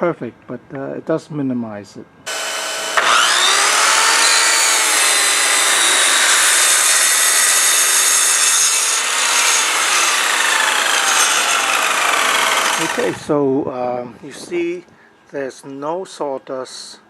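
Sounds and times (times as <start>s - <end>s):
small vacuum running: 2.3s - 13.2s
circular saw cutting wood: 2.3s - 13.3s.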